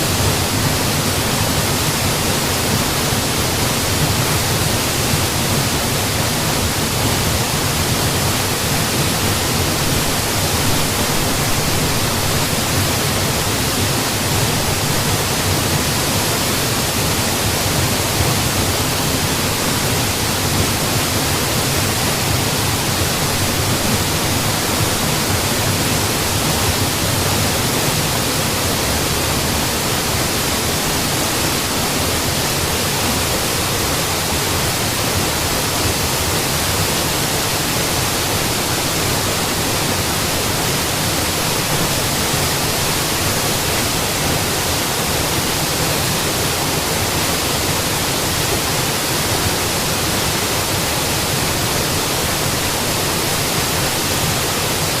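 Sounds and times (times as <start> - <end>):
waterfall rushing: 0.0 - 55.0.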